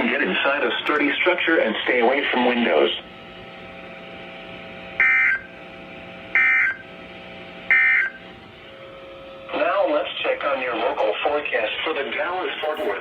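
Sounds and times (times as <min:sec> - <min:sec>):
faint radio hum: 0:00.0 - 0:03.1, 0:09.5 - 0:13.0.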